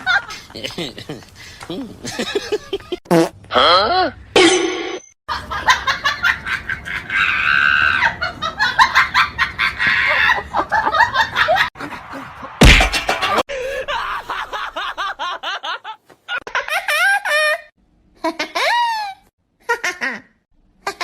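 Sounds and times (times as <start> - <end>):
people laughing: 0.0 - 3.0, 5.3 - 17.7
loud thump: 12.6 - 13.2.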